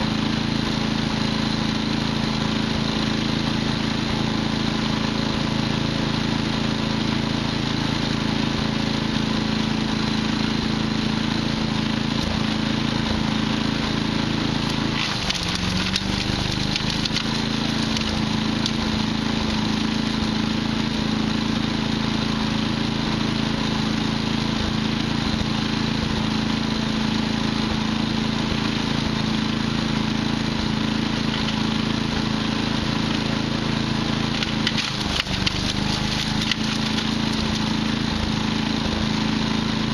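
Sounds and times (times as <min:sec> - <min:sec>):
wood chipper humming: 0:00.0 - 0:39.9
wood cracking and splintering: 0:14.6 - 0:20.5, 0:31.2 - 0:31.7, 0:34.3 - 0:38.3.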